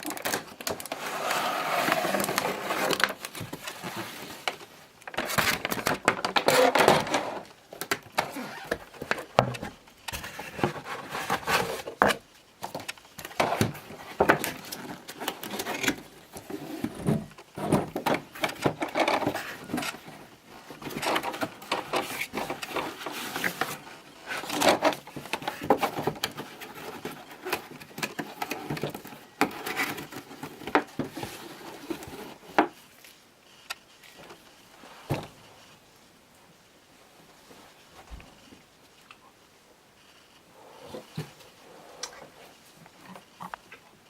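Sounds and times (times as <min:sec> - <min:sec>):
cardboard boxes rustling: 0:00.0 - 0:33.2.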